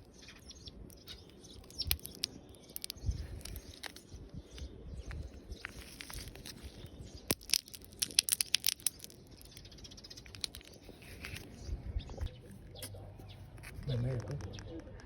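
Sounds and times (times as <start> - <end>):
sharp crackling clicks: 0.9 - 4.7, 7.3 - 10.8.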